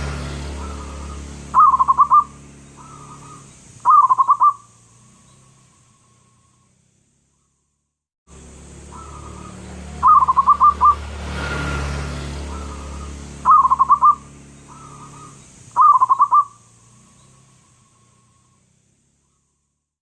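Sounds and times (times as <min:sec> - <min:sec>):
dove cooing: 0:00.4 - 0:04.7, 0:08.9 - 0:11.0, 0:12.4 - 0:16.6.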